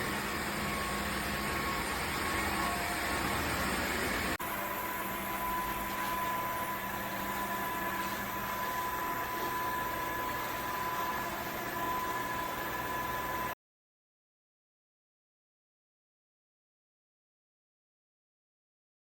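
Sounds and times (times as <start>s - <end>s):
wet-dry vacuum running: 0.0s - 13.6s.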